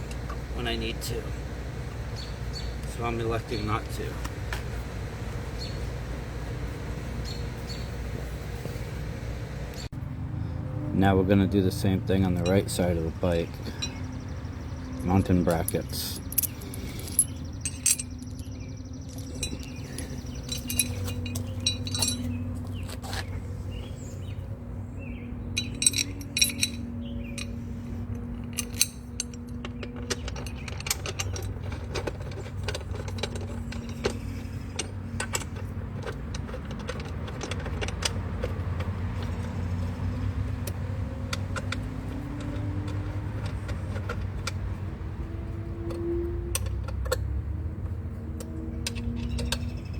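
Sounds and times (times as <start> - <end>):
metal hardware clinking: 12.2 - 23.3, 25.5 - 44.9, 48.3 - 49.9
low hum: 12.3 - 38.5
tools clicking against metal: 15.0 - 22.4, 25.6 - 44.7, 45.8 - 47.3, 48.3 - 49.9.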